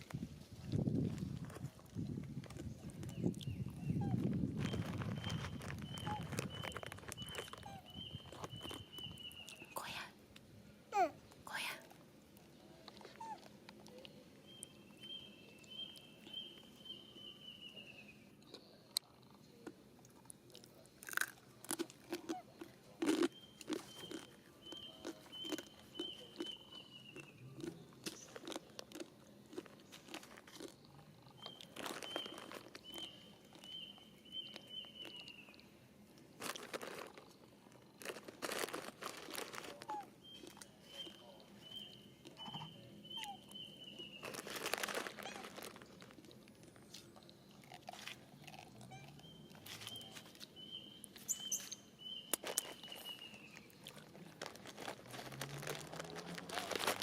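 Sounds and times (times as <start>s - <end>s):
crunching and rustling: 0.0s - 9.7s, 11.9s - 17.3s, 18.5s - 57.0s
bird singing short phrase: 3.4s - 9.8s, 39.9s - 44.3s
crackling bursts: 54.3s - 57.0s.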